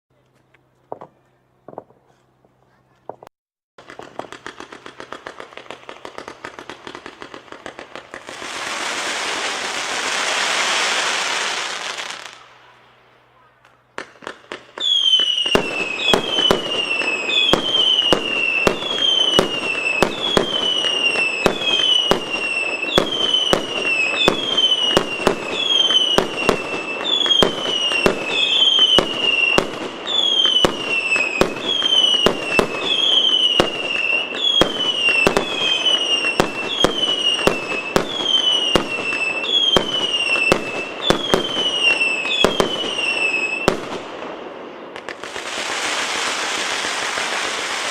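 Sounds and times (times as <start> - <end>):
firework pops and bangs: 3.0 - 12.4, 13.6 - 47.9
falling firework whistle: 14.8 - 44.0.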